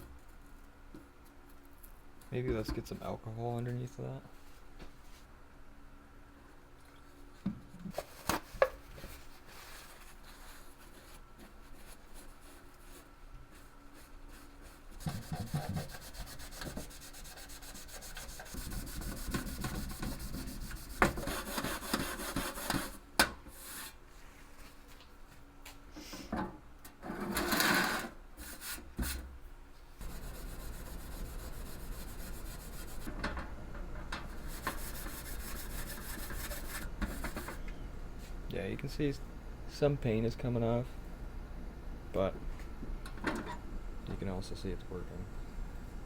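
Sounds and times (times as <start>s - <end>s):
cloth scrubbing on sheet metal: 14.8s - 23.0s, 30.0s - 33.1s, 34.2s - 37.6s.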